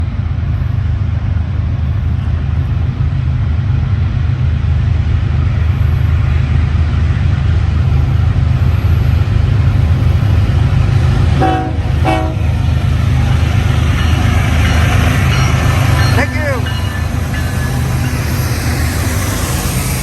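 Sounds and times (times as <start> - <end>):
diesel locomotive engine rumble: 0.0 - 20.0
locomotive air horn blasts: 11.4 - 12.6.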